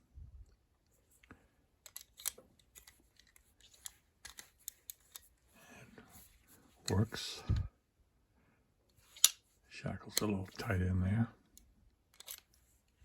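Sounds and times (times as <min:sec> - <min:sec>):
key turning in padlock: 0:12.1 - 0:12.5.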